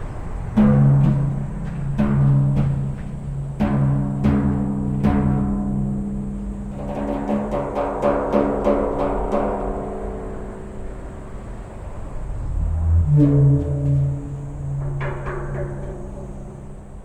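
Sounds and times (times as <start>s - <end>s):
frame drum hits and taps: 0.6s - 10.3s, 13.1s - 17.0s.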